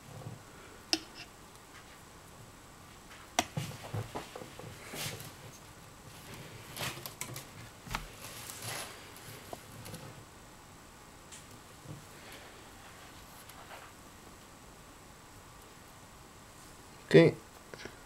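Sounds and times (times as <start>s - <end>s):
plastic strands rustling: 6.1s - 10.1s.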